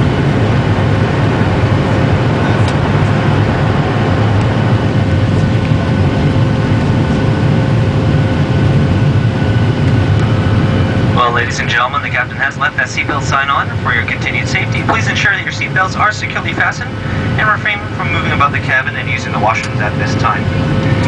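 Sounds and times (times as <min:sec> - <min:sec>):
jet engines roaring in cabin: 0:00.0 - 0:21.0
faint steady hum: 0:09.8 - 0:21.0.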